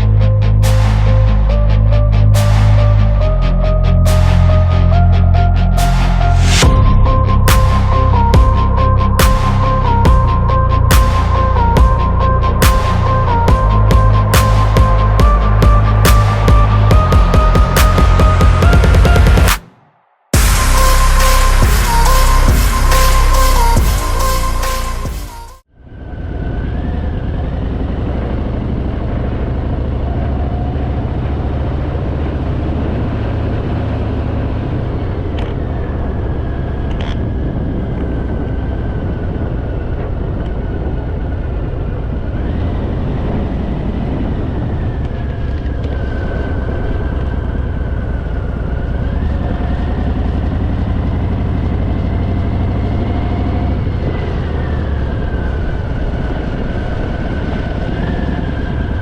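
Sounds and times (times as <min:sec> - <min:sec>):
wind rumble: 0:00.0 - 0:25.0, 0:25.6 - 0:59.0
thin whine: 0:20.3 - 0:25.6.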